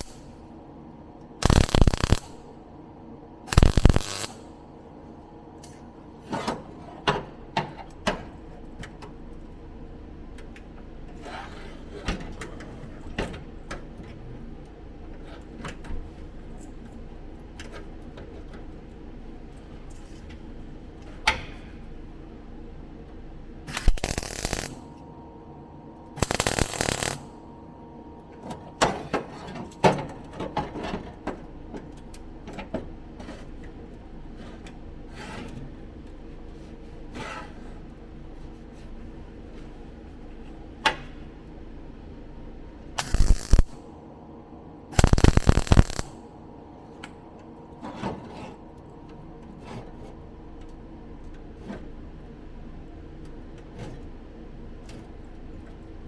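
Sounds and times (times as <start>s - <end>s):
loud noisy bursts: 1.4s - 2.4s, 3.6s - 4.4s, 23.8s - 24.8s, 26.2s - 27.2s, 43.0s - 43.8s, 45.0s - 46.1s.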